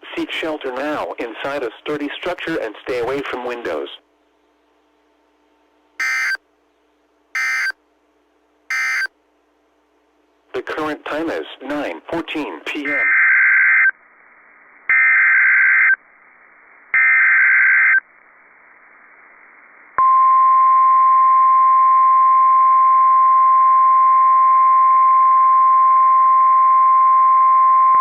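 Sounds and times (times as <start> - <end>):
buzzy digital data screeches: 6.0 - 6.4, 7.4 - 7.8, 8.7 - 9.1
steady warning alarm tone: 6.0 - 6.4, 7.4 - 7.8, 8.7 - 9.1.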